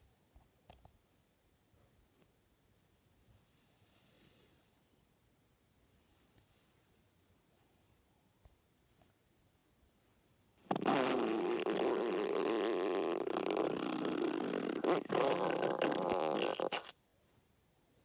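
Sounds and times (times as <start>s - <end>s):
stomach growling: 10.7s - 16.9s.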